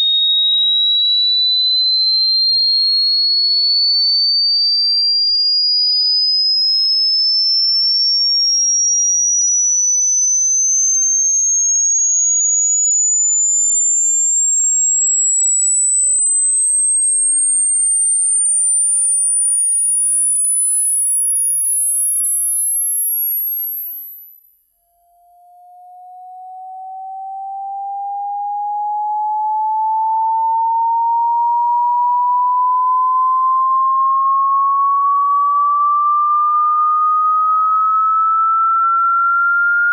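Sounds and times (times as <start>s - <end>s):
high rising pure tone: 23.9s - 33.4s
lower rising pure tone: 24.0s - 33.4s.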